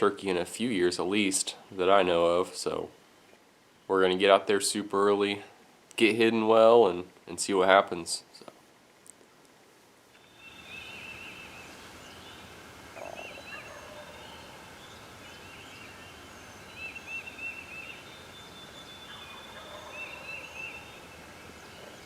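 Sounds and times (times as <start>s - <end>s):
songbirds chirping: 0.0s - 22.0s
turkey gobbling: 13.0s - 14.7s, 19.1s - 21.0s.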